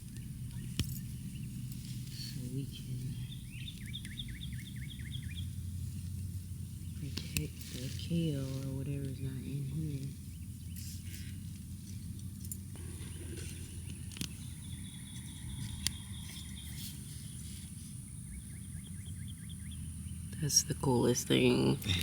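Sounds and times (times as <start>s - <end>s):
birds chirping: 0.0s - 22.0s
low rumble: 0.0s - 22.0s
faint clicks: 10.8s - 17.8s.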